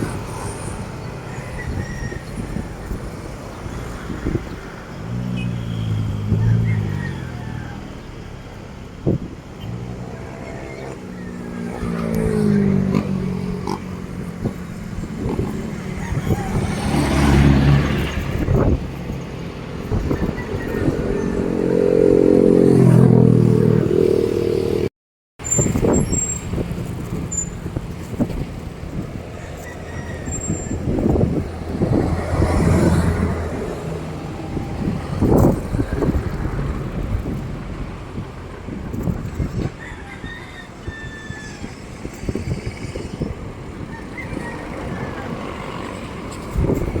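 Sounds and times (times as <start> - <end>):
diesel engine under load: 25.4 - 40.1.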